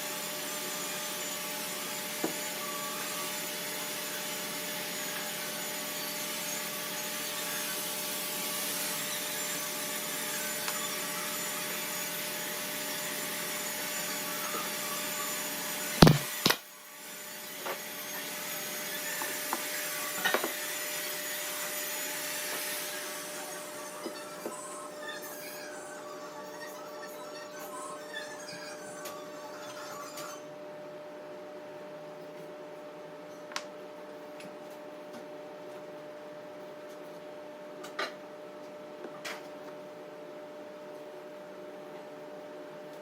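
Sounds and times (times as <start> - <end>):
power tool working wood: 0.0 - 24.6
loud sharp knocks: 16.0 - 16.6.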